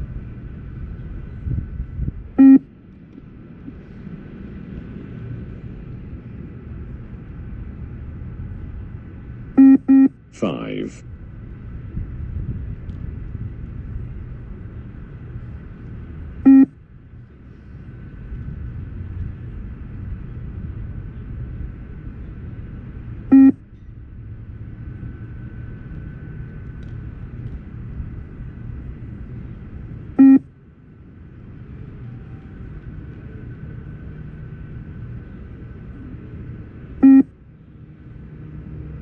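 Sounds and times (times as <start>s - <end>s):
steady low rumble: 0.0s - 39.0s
short beeps: 2.4s - 2.6s, 9.6s - 10.2s, 16.5s - 16.8s, 23.3s - 23.6s, 30.2s - 30.5s, 37.0s - 37.3s.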